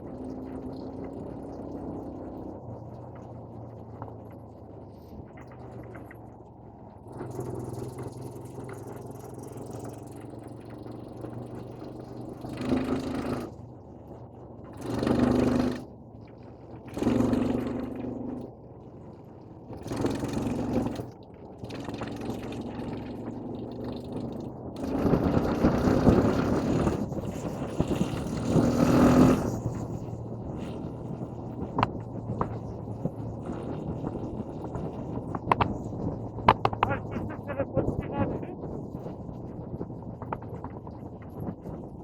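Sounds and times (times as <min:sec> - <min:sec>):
vehicle engine revving: 0:07.0 - 0:13.6, 0:14.6 - 0:15.9, 0:16.8 - 0:18.5, 0:19.7 - 0:39.4.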